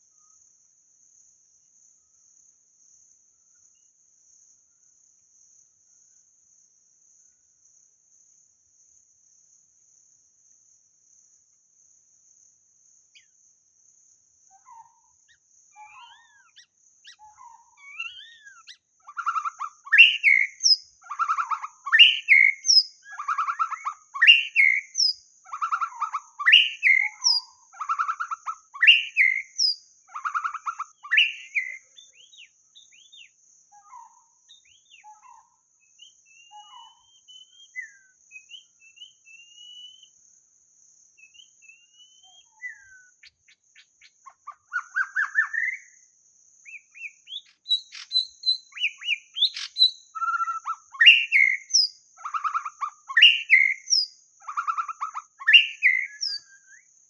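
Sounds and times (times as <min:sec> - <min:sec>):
bird singing whistled phrases: 0:17.8 - 0:33.3, 0:36.0 - 0:40.1, 0:41.2 - 0:43.4, 0:44.5 - 0:45.9, 0:46.7 - 0:56.9.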